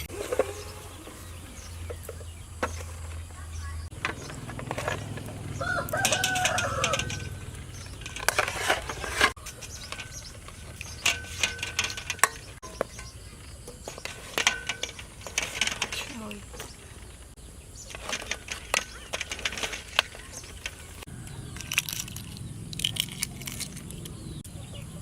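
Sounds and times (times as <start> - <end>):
chickens calling: 0.0 - 15.2, 16.2 - 25.0
sharp clicks and knocks: 1.8 - 17.3
rooster crowing: 5.4 - 7.7.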